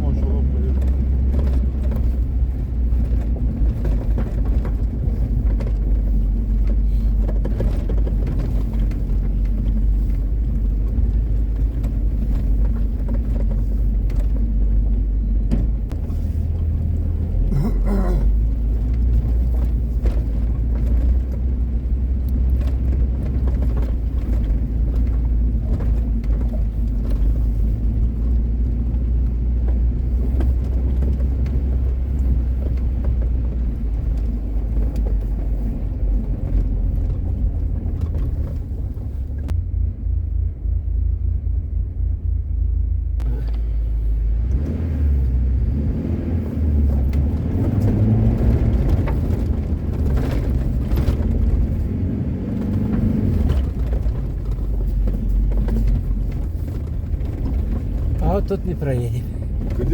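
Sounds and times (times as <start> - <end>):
vehicle engine rumbling: 0.0 - 59.9.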